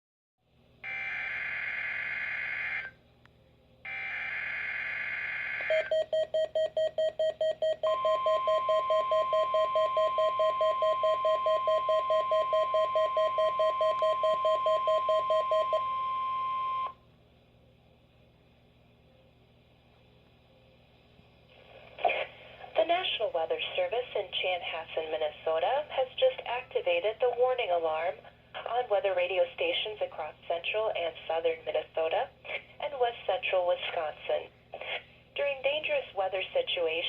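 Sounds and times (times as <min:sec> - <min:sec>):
steady warning alarm tone: 0:00.8 - 0:02.9, 0:03.9 - 0:17.0.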